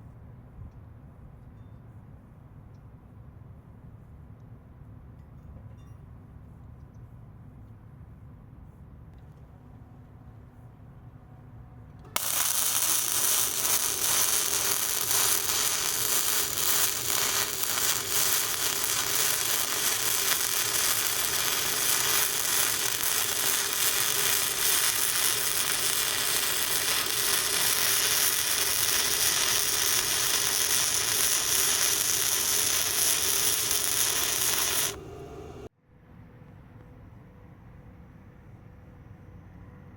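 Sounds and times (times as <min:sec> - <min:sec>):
welding arc crackle: 0:12.2 - 0:35.0.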